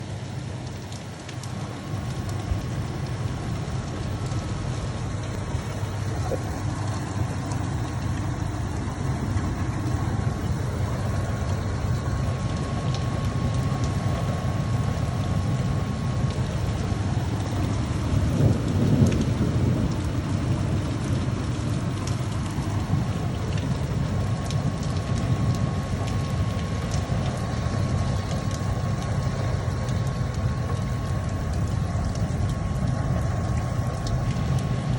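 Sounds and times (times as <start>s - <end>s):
heavy rain pouring: 0.0s - 34.9s
thunder rumbling: 5.2s - 13.8s, 16.7s - 24.9s.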